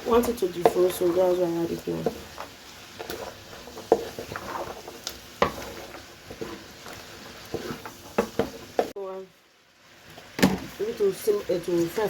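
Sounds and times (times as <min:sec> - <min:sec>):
vegetables sizzling in a pan: 0:00.0 - 0:12.0.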